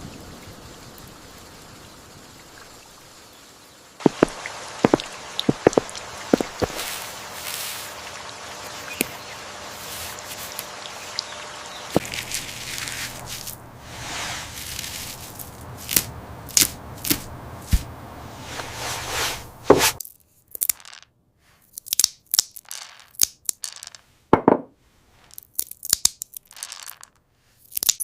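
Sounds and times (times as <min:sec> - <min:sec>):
steady hiss: 0:00.0 - 0:20.0
objects clicking and scraping: 0:25.2 - 0:27.2.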